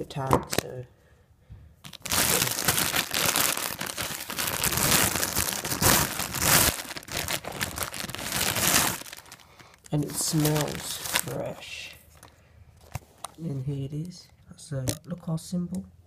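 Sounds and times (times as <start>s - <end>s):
plastic packaging crinkling: 1.8s - 13.6s.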